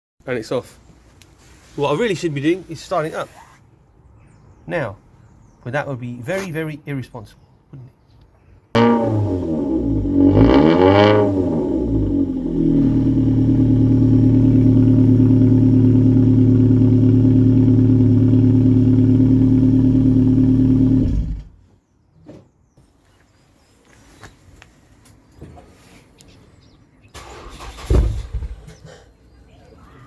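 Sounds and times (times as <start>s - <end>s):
car engine idling: 11.4s - 21.5s.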